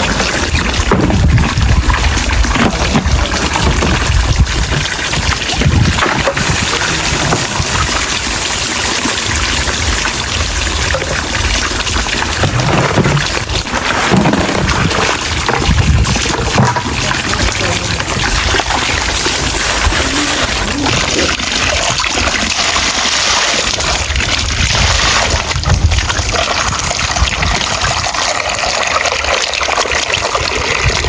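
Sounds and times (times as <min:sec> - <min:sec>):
low rumbles: 0:00.0 - 0:23.0
water pouring and trickling: 0:00.0 - 0:31.0.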